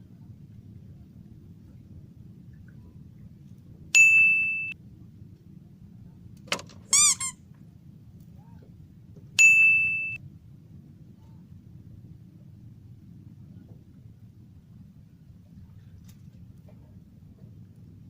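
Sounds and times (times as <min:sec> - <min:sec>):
sharp high dings: 0:04.0 - 0:04.8, 0:09.4 - 0:10.2.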